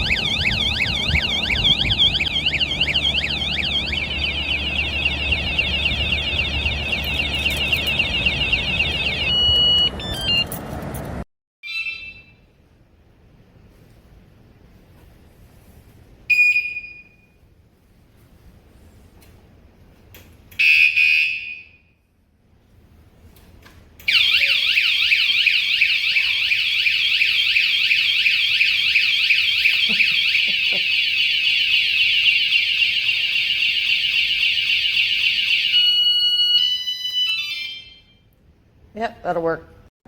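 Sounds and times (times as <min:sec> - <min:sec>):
alarm warning chirp: 0:00.0 - 0:10.5, 0:11.6 - 0:12.4, 0:24.1 - 0:38.1
alarm siren wailing: 0:00.0 - 0:10.6, 0:11.6 - 0:12.4, 0:20.6 - 0:21.9, 0:24.1 - 0:38.3.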